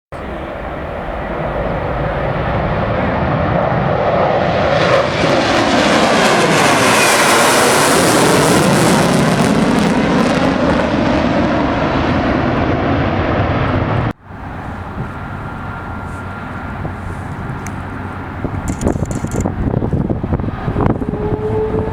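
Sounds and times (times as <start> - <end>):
airliner engines passing close: 0.1 - 21.9
steady engine sound: 13.7 - 21.9.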